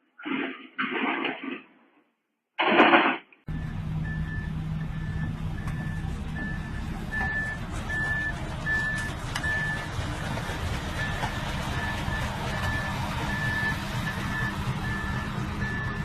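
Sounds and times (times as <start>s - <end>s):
reversing alarm beeping: 3.5s - 10.0s, 10.9s - 16.0s
diesel engine rumble: 3.5s - 16.0s.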